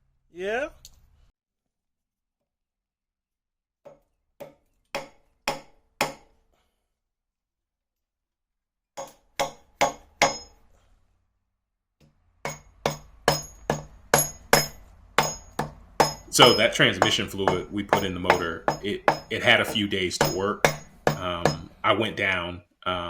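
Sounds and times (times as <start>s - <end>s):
hammer blows on metal: 12.5s - 22.0s.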